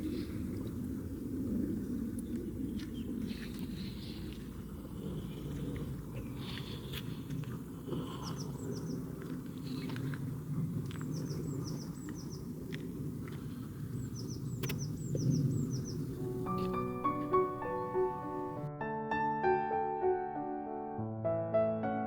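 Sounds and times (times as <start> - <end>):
steady low rumble: 0.0 - 18.7
small birds chirping: 1.6 - 18.6.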